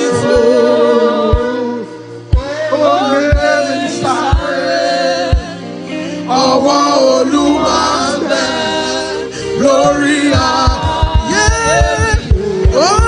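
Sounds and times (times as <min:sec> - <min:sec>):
band accompaniment: 0:00.0 - 0:08.4, 0:09.5 - 0:13.0
man singing gospel song: 0:00.0 - 0:13.0
kick drum beats: 0:01.3 - 0:01.7, 0:02.3 - 0:02.6, 0:03.3 - 0:03.6, 0:09.8 - 0:13.0
held bass note: 0:09.6 - 0:12.8.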